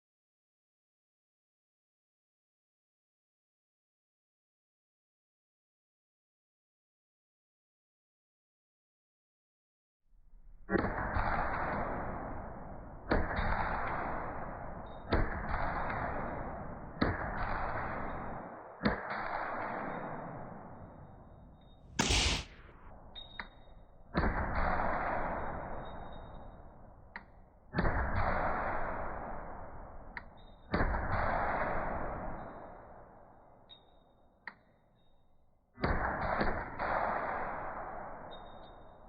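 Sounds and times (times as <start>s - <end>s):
heavy booms ringing out: 22.0s - 22.6s
short hiss: 22.0s - 22.6s.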